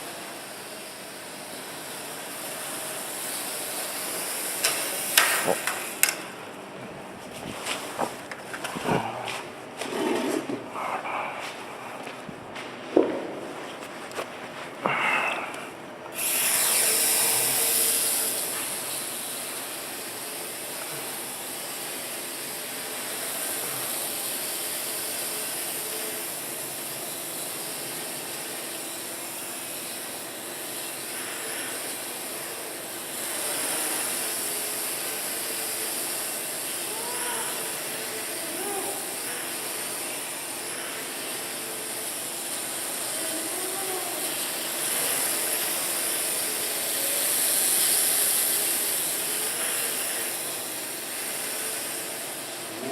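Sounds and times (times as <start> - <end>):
quadcopter propellers whirring: 0.0 - 6.3, 14.9 - 52.9.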